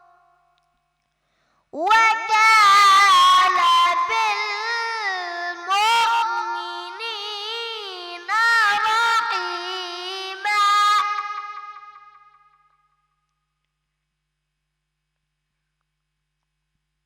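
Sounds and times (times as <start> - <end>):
boy chanting recitation: 1.8 - 12.2.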